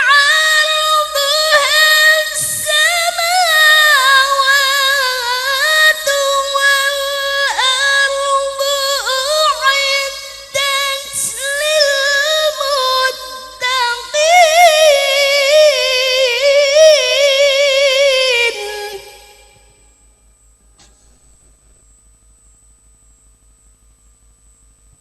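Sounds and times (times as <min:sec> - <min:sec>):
person chanting recitation: 0:00.0 - 0:19.8.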